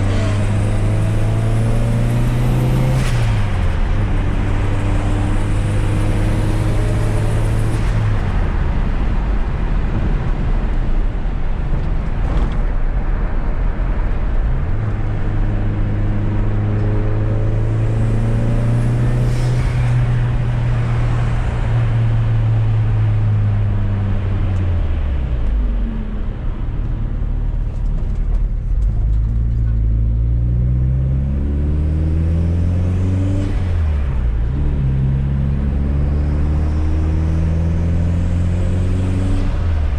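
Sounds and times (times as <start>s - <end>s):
car engine revving: 0.0s - 8.7s, 26.2s - 39.9s.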